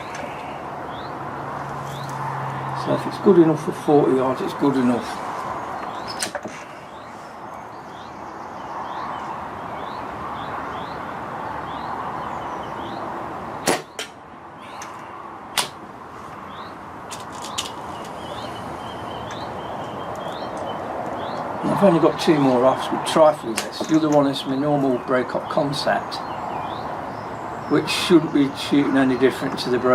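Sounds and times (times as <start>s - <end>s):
air rifle shots: 13.6s - 14.2s.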